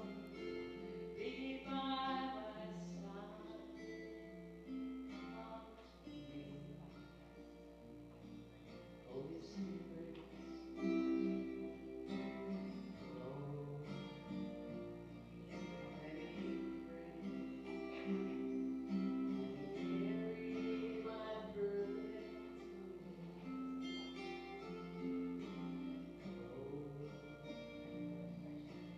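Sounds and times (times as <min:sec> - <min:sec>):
woman singing: 0:00.0 - 0:04.1, 0:05.1 - 0:07.0, 0:15.7 - 0:23.8
strummed acoustic guitar: 0:00.0 - 0:28.9.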